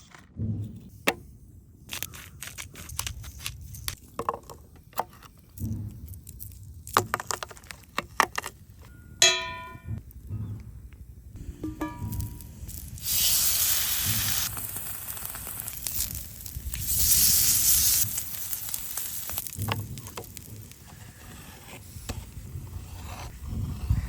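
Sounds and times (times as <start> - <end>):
clicks and crackles: 1.9 - 8.9, 14.0 - 21.4
steak sizzling over campfire: 12.4 - 22.5
loud hissing: 12.6 - 21.1.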